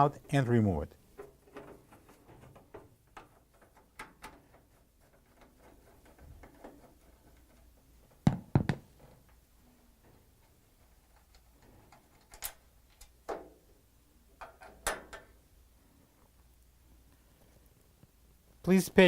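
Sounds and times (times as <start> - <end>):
sharp knocks: 8.2 - 8.9.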